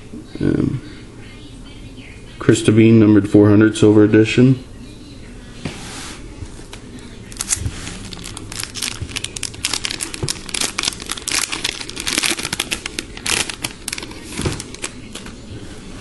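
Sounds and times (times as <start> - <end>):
wrapper tearing and crinkling: 7.3 - 15.2.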